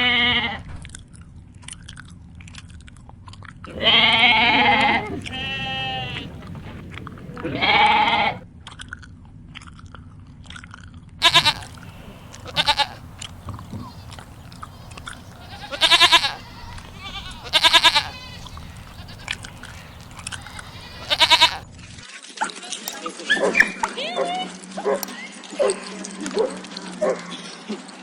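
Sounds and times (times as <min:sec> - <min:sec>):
livestock bleating: 0:00.0 - 0:00.6, 0:03.7 - 0:08.4, 0:11.2 - 0:21.6
chewing clicks: 0:06.2 - 0:07.5, 0:11.2 - 0:21.5.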